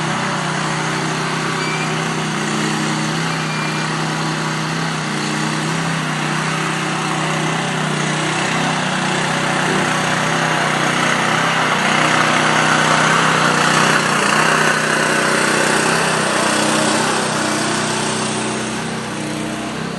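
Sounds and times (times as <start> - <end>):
small engine running: 0.0 - 19.9.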